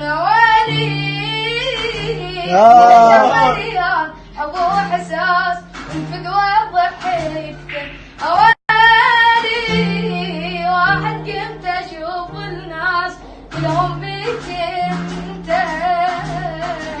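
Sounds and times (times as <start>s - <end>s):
backing track with plucked strings: 0.0s - 17.0s
child singing pop song: 0.0s - 17.0s.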